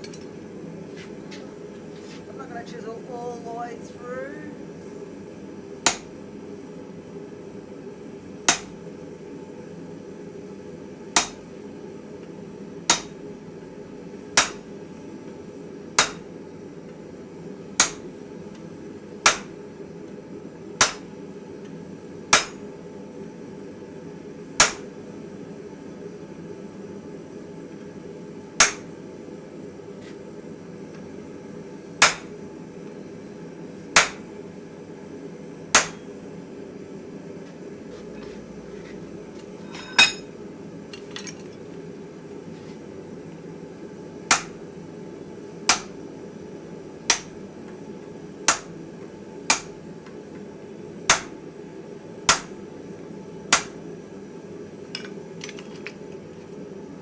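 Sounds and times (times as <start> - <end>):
steady low hum: 0.0 - 50.0
hammer striking steel: 22.4 - 22.6, 32.0 - 32.3, 35.8 - 36.1, 39.6 - 40.3.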